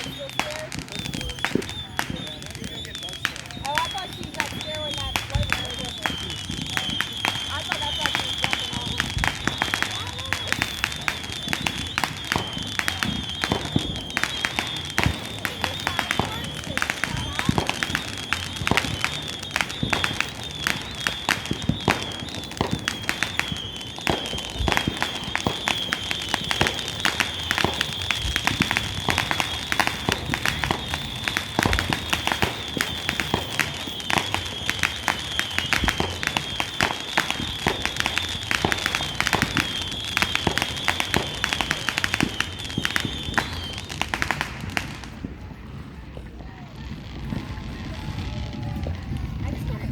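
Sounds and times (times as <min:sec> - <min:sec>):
fireworks cracking and popping: 0:00.0 - 0:49.9.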